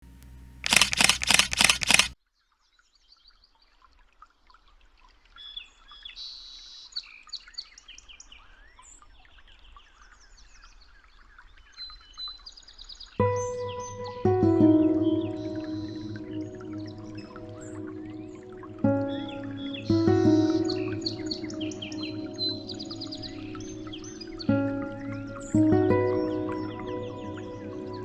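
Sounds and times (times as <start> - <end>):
rapid pulses of noise: 0.2 - 2.2.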